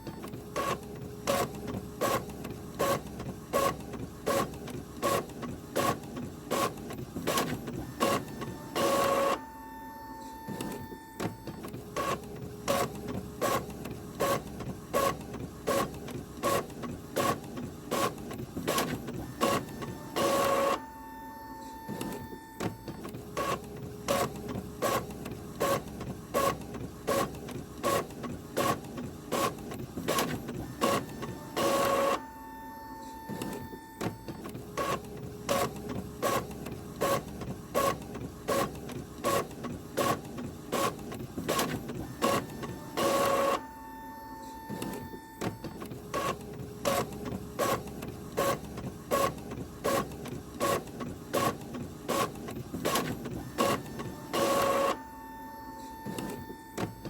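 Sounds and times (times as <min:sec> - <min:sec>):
steady printer tone: 0:00.0 - 0:57.0
printer clicking: 0:44.4 - 0:55.0, 0:55.7 - 0:57.0.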